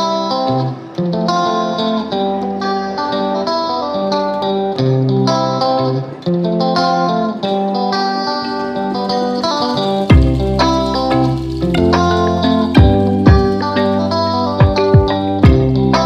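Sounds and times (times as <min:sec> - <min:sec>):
plucked guitar melody: 0:00.0 - 0:16.0
sustained bass notes: 0:09.9 - 0:16.0.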